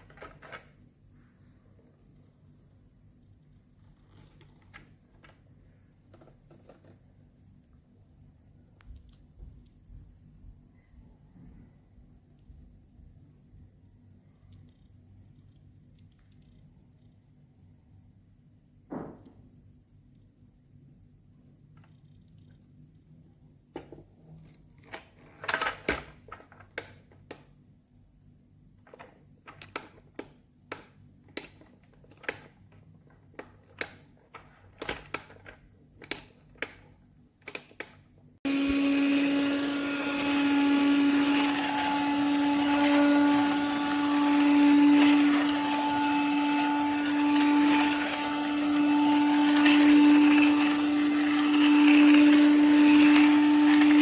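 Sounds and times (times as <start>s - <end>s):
handheld vacuum cleaner whirring: 38.5s - 54.0s.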